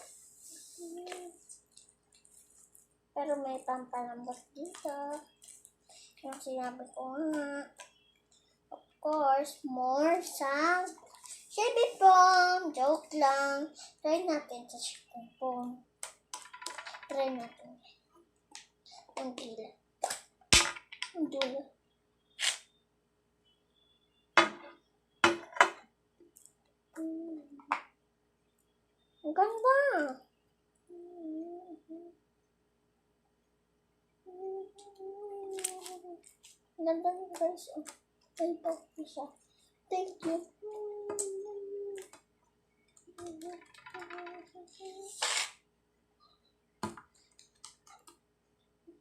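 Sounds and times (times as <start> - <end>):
child's wordless vocal sounds: 0.0 - 1.6, 8.7 - 15.8, 27.0 - 27.6, 30.9 - 32.2, 34.3 - 42.2, 43.1 - 45.4.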